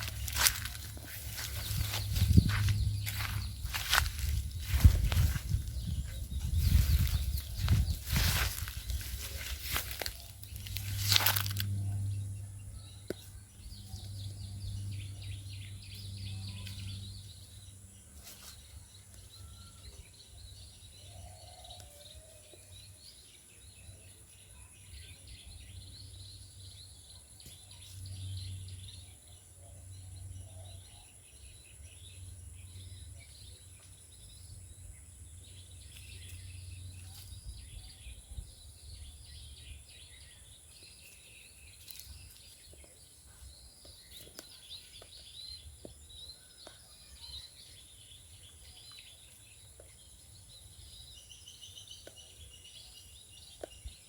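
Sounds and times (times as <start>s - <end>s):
low droning hum: 0.0s - 19.8s
small birds chirping: 0.0s - 54.0s.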